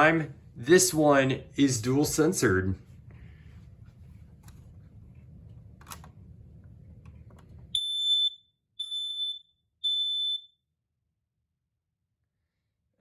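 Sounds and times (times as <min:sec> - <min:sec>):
smoke alarm beeps: 0:07.8 - 0:10.6.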